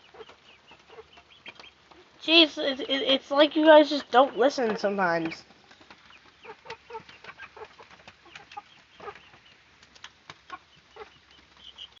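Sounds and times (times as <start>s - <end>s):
chickens clucking softly: 0.0s - 2.2s, 5.8s - 9.7s, 10.3s - 12.0s.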